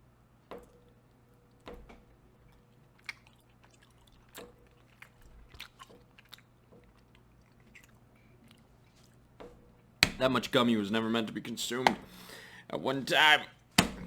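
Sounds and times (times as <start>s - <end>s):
chewing crunchy food: 0.6s - 9.4s.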